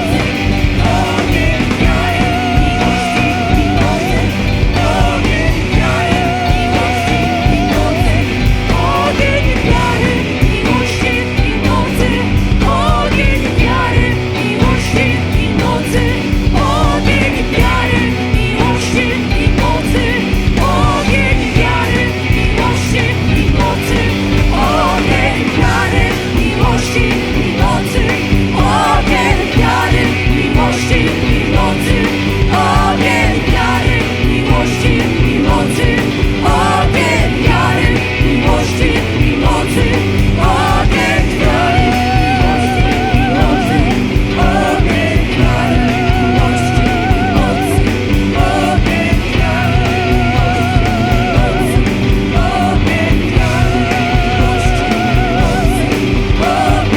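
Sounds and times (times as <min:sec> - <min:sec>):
singing: 0:00.0 - 0:56.9
worship band playing rock music: 0:00.0 - 0:56.9.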